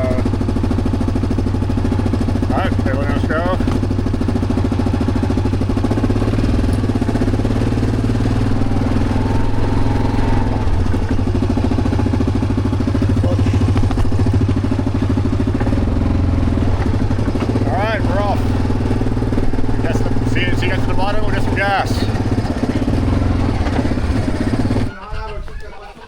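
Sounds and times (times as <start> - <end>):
atv engine running: 0.0 - 26.0.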